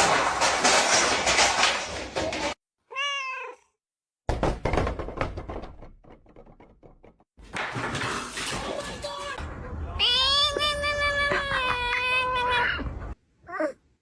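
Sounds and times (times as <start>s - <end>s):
cat meowing: 2.9s - 3.8s
knocks and thuds: 4.3s - 8.9s.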